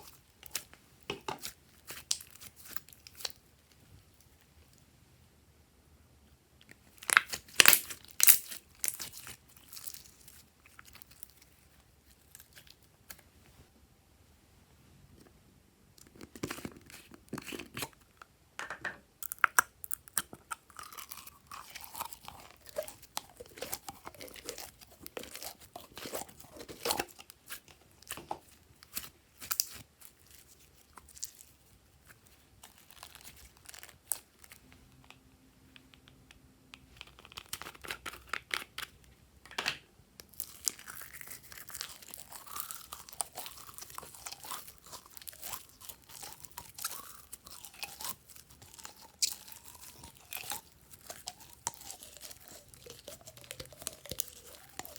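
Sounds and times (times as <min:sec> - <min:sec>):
slime squished by hand: 0:01.3 - 0:03.5, 0:06.9 - 0:11.4, 0:20.9 - 0:34.6, 0:40.2 - 0:54.9.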